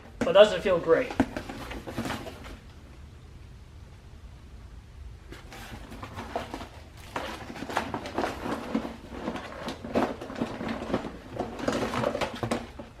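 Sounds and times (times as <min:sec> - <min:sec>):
items rummaged in cardboard box: 0:01.0 - 0:02.6, 0:05.3 - 0:13.0.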